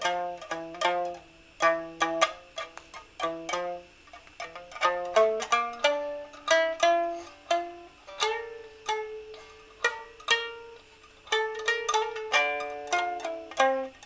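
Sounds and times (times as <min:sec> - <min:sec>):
plucked string instrument: 0:00.0 - 0:14.0.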